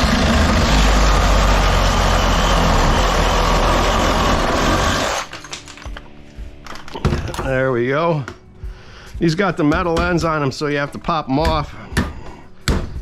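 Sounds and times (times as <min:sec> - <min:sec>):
power saw cutting metal: 0:00.0 - 0:05.5.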